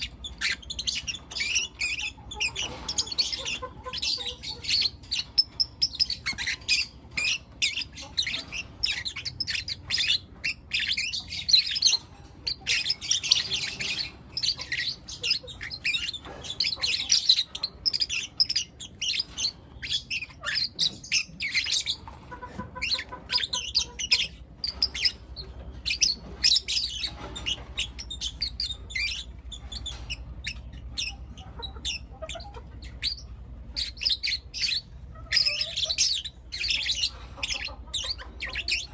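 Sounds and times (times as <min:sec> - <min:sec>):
lovebirds chirping and squawking: 0:00.0 - 0:38.9.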